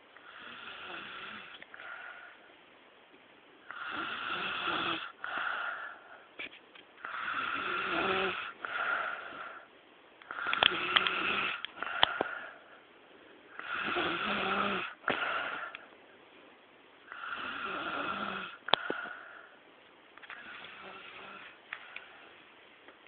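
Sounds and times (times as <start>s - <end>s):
woman snoring: 0.2s - 2.2s, 3.7s - 6.0s, 7.0s - 9.7s, 10.3s - 12.6s, 13.6s - 15.8s, 17.1s - 19.5s, 20.3s - 21.6s.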